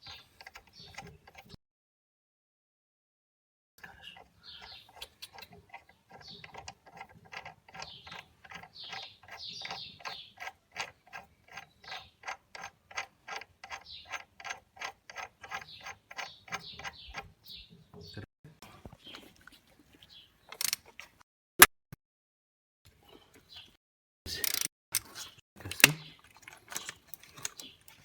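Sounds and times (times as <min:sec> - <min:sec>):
ratchet wrench clicking: 0:04.6 - 0:17.2, 0:24.4 - 0:24.7.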